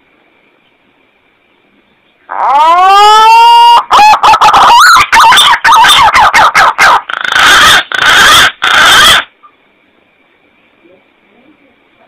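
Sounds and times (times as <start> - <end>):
pigeon call whistle and warble: 2.6 - 9.3.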